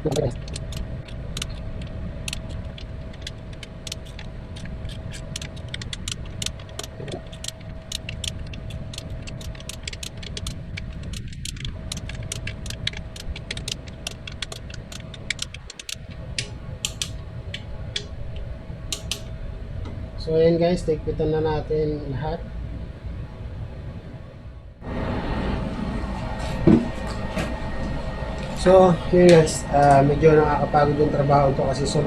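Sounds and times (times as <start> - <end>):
torque wrench ratcheting: 0.0 - 16.0
faint steady hum: 0.0 - 32.0.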